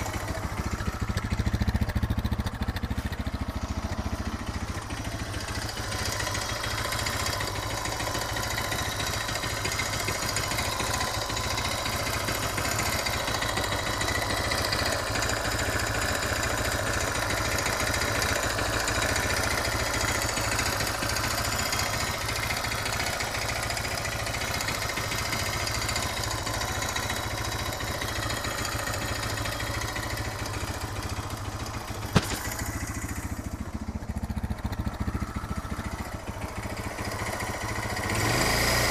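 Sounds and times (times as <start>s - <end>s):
engine clacking: 0.0s - 38.9s
motorcycle engine running: 0.0s - 38.9s
sharp click: 32.1s - 32.8s.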